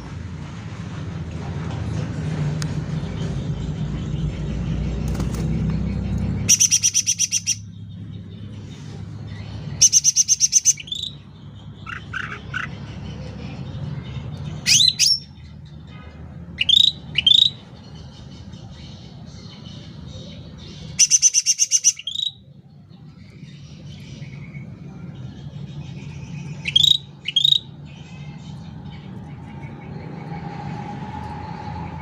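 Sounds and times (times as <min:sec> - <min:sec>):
bird whistled calls: 0:06.4 - 0:07.7, 0:09.8 - 0:11.2, 0:16.6 - 0:17.6, 0:21.0 - 0:22.4, 0:26.6 - 0:27.7.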